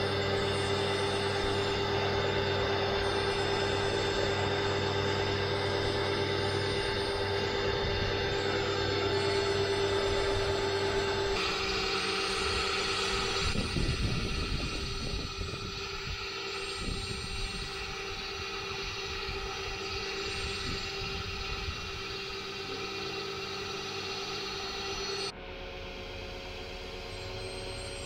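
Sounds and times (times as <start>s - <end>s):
pressure washer running: 10.0s - 25.2s.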